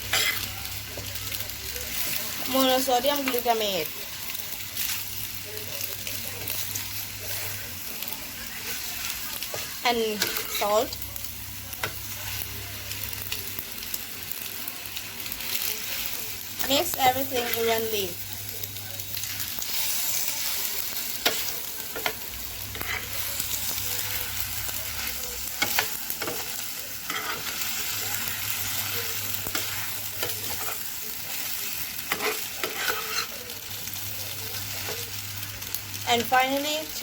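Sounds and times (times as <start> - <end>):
noodles sizzling in a pan: 0.0 - 37.0
spatula scraping and clacking: 32.1 - 33.3.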